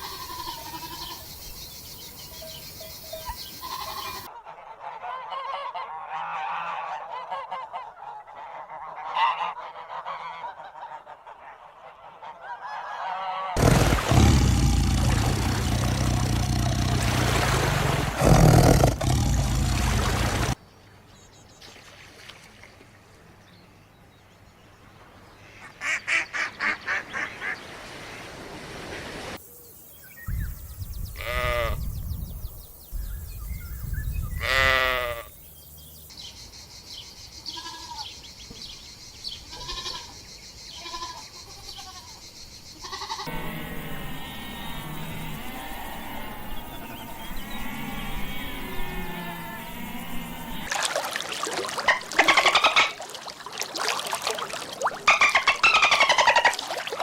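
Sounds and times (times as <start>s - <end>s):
farm animal calls: 0.0s - 1.3s, 3.1s - 11.3s, 31.2s - 31.8s, 34.4s - 35.3s, 39.5s - 40.2s, 51.4s - 53.2s, 54.5s - 57.0s.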